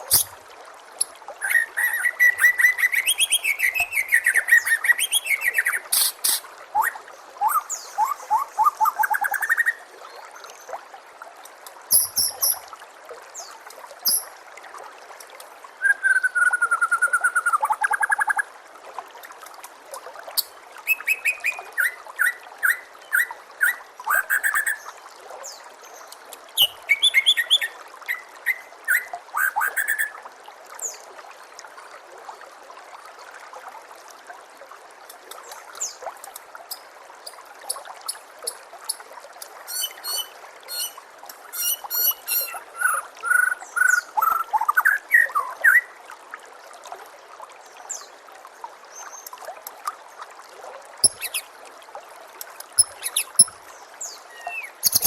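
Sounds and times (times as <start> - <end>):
songbird singing whistles and trills: 0.0 - 0.3, 1.0 - 9.8, 11.9 - 12.6, 14.0 - 14.3, 15.8 - 18.4, 20.8 - 24.8, 26.6 - 30.2, 39.7 - 45.9, 51.0 - 51.5, 52.8 - 55.0
trickle of running water: 0.0 - 55.0.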